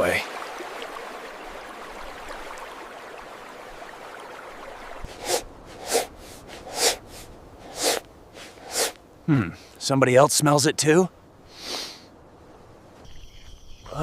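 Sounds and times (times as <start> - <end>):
person sniffing hard: 5.1 - 9.0, 11.5 - 12.1
steady hiss: 5.1 - 14.0.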